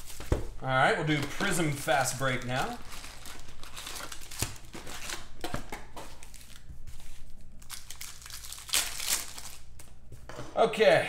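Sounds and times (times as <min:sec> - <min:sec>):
foil packs tearing and crinkling: 0:01.0 - 0:06.7, 0:07.6 - 0:09.8.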